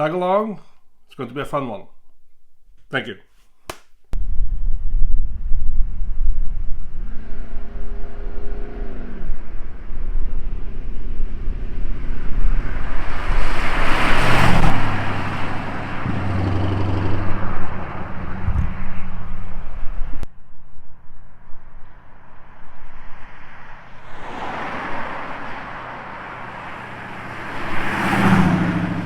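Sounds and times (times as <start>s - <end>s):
hot rod engines driving past: 7.1s - 20.2s, 22.2s - 29.0s.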